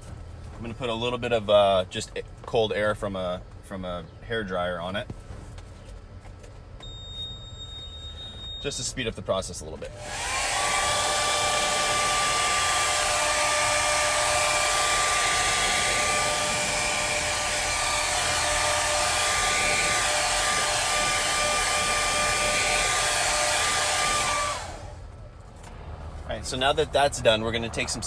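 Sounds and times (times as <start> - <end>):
hair dryer blowing with whine: 9.8 - 25.2.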